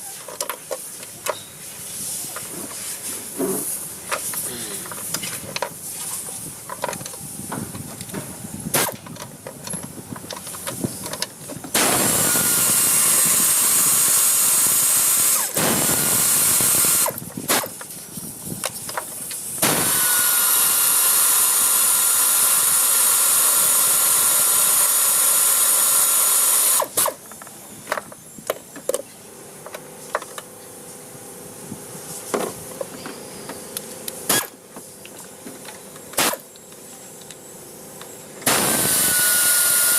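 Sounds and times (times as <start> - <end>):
air tool hissing and whining: 10.3 - 27.2, 37.3 - 39.9.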